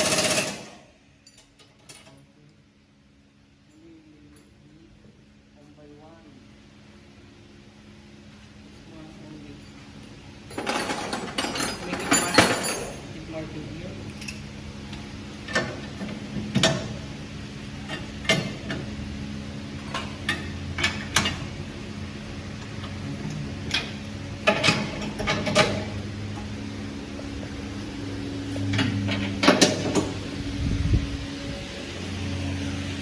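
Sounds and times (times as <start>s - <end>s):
low machine hum: 0.0s - 33.0s
hand tools clinking on metal: 10.6s - 13.2s.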